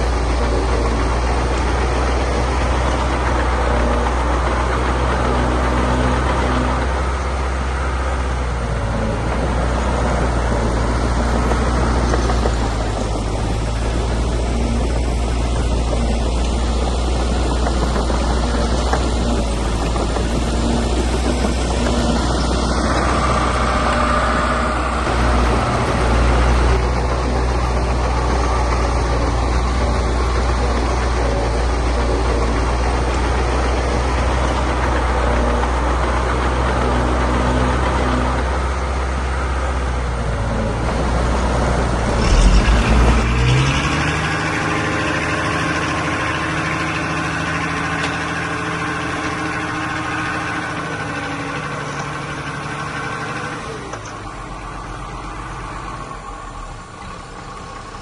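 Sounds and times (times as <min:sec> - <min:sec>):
heavy diesel engines running: 0:00.0 - 0:58.0
loud clatter: 0:08.5 - 0:35.7, 0:40.8 - 0:54.1.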